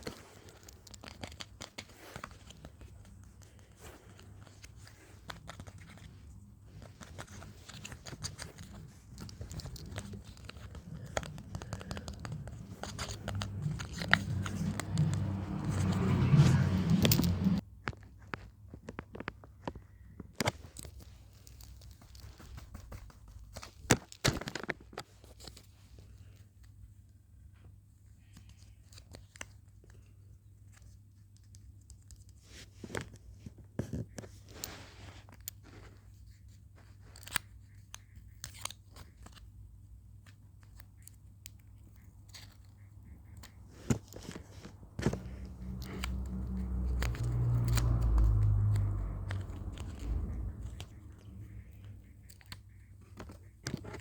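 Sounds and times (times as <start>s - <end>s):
heavy breathing on microphone: 9.4s - 17.6s.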